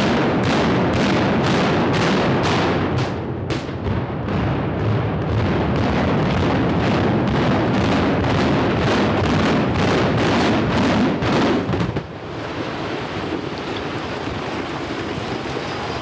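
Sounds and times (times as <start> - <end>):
demolition charges cracking: 12.6 - 16.0.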